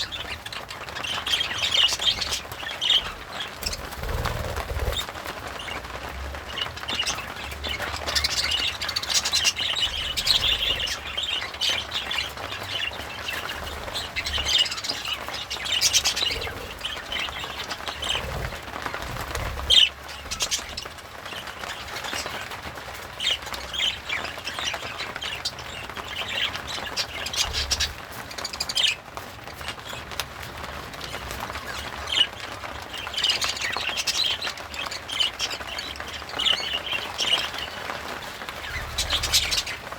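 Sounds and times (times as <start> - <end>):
budgerigar chattering: 13.0 - 20.8.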